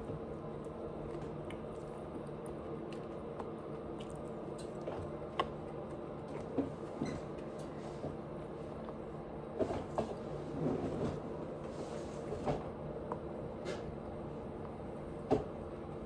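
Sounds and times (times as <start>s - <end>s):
chewing and wet mouth sounds: 0.4s - 6.8s.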